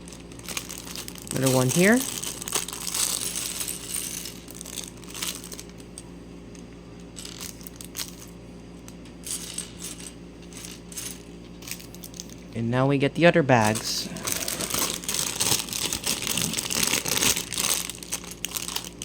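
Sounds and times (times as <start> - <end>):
plastic bag crinkling: 0.0 - 6.0, 7.2 - 8.3, 13.6 - 19.0.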